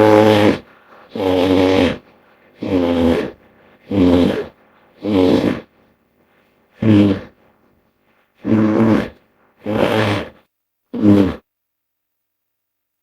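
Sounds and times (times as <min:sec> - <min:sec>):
deep creature calls: 0:00.0 - 0:05.7, 0:06.8 - 0:07.4, 0:08.4 - 0:10.4.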